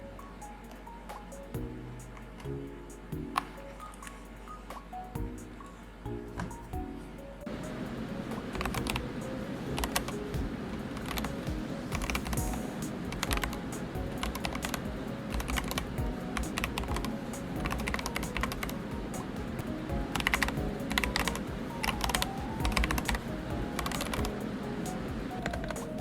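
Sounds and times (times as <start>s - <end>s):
soft background music: 0.0s - 26.0s
mechanical keyboard typing: 9.8s - 26.0s.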